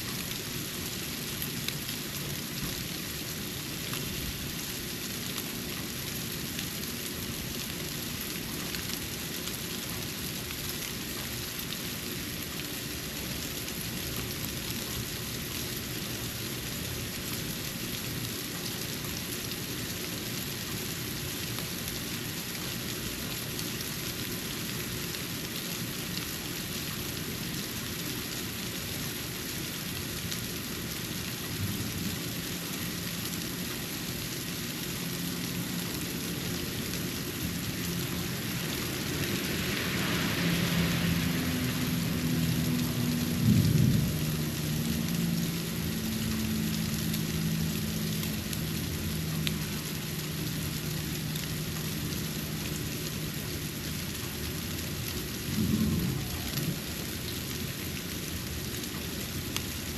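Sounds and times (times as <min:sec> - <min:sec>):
low rumble: 0:55.5 - 0:56.9.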